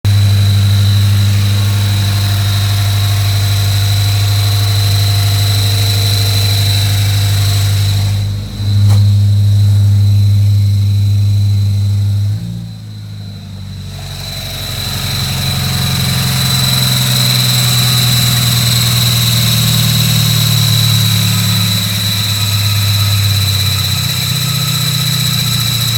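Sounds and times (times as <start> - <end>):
car engine idling: 0.0 - 25.9
high-pitched bearing whine: 0.1 - 25.9
click: 8.8 - 9.8.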